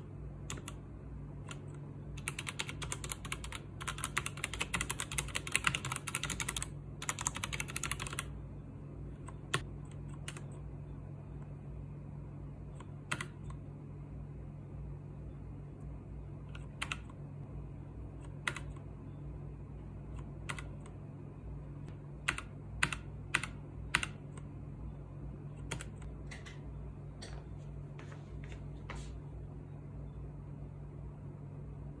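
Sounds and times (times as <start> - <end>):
typing on mechanical keyboard: 0.5 - 0.8, 1.5 - 8.3, 13.1 - 13.5, 16.6 - 17.2, 18.4 - 18.8, 20.4 - 20.8, 22.2 - 24.2, 25.6 - 26.5.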